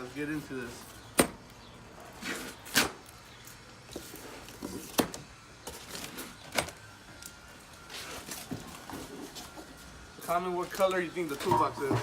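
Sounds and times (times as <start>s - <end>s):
toolbox knocks and scrapes: 11.4s - 12.0s.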